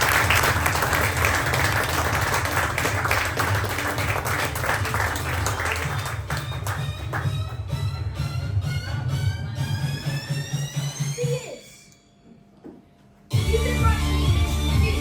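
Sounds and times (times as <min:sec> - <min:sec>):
audience applauding: 0:00.0 - 0:07.7
background music: 0:00.0 - 0:12.2, 0:13.3 - 0:15.0.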